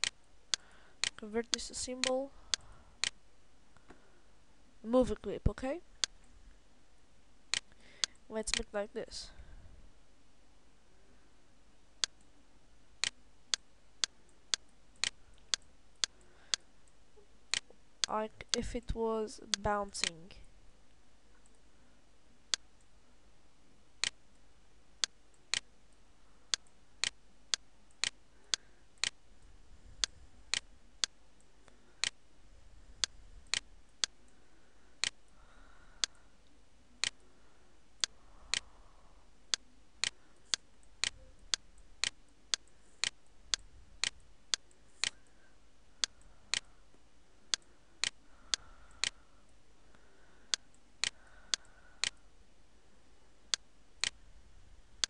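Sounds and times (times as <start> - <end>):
computer mouse clicking: 37.0 - 37.3, 50.5 - 52.2.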